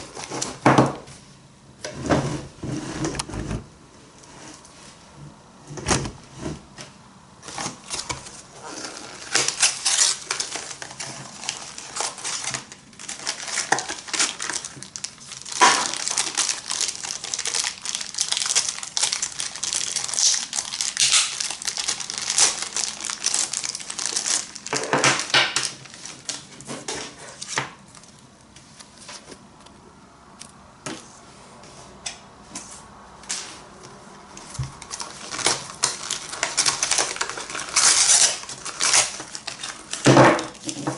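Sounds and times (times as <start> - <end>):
packaging crinkling: 7.4 - 28.2, 34.4 - 40.9
packaging tearing: 7.7 - 26.4, 34.8 - 40.8.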